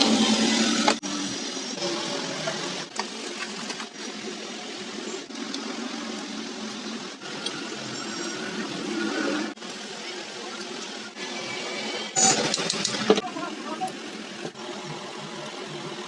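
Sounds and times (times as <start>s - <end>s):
mixer grinder motor running: 0.0s - 7.9s.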